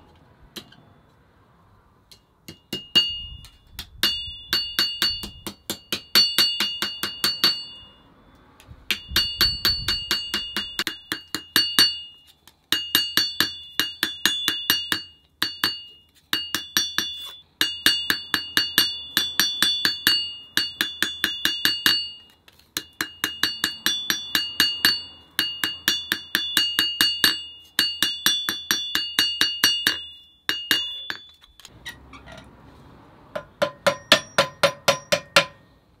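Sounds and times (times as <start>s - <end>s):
hammer striking a nail: 2.1s - 7.9s, 8.9s - 12.1s, 12.7s - 31.4s, 33.4s - 35.7s.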